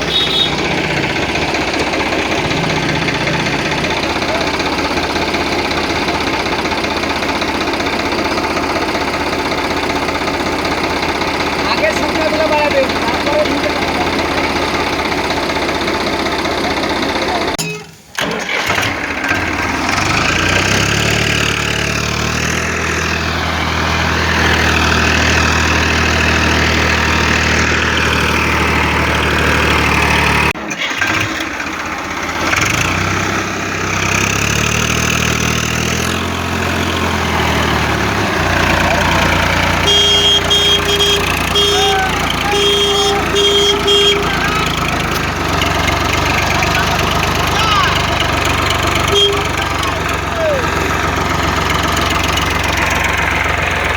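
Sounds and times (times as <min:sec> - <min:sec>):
vehicle engine running: 0:00.0 - 0:17.6, 0:18.4 - 0:53.9
short electronic beeps: 0:39.8 - 0:44.4.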